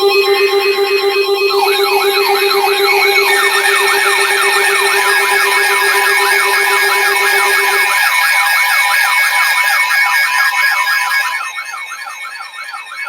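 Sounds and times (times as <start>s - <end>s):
low steady tone: 0.0s - 7.9s
siren-style alert tone: 0.0s - 8.9s.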